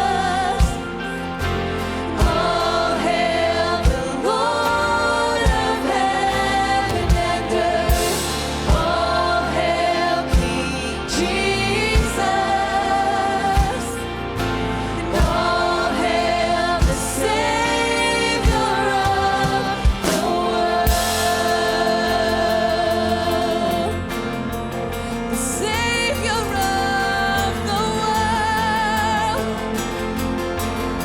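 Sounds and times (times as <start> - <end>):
person singing with vibrato: 0.0 - 30.2
church band worship music: 0.0 - 31.0
bass drum hits: 2.2 - 2.9, 6.9 - 9.6, 15.1 - 15.8, 16.8 - 17.4, 18.4 - 21.7.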